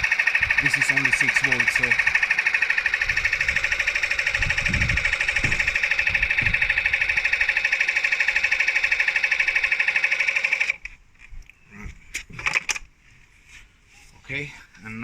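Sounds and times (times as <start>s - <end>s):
electric compressor buzzing: 0.0s - 10.9s.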